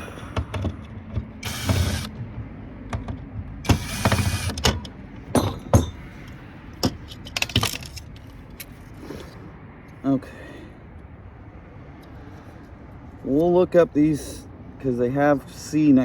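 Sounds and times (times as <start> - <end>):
short scraping rattles: 0.0 - 9.4
metal tools clinking and knocking: 2.9 - 9.0.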